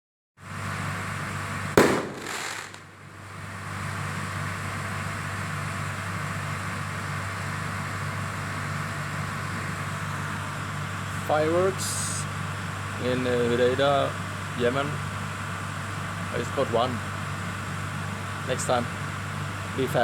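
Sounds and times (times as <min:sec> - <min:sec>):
diesel generator humming: 0:00.4 - 0:20.0
firework bang: 0:01.8 - 0:02.9.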